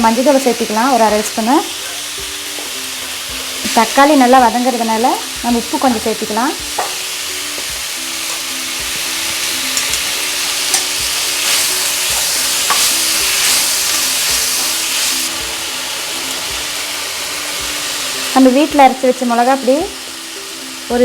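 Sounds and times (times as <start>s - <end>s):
food sizzling in hot oil: 0.0s - 21.0s
spoon clicking against pan: 9.7s - 13.0s.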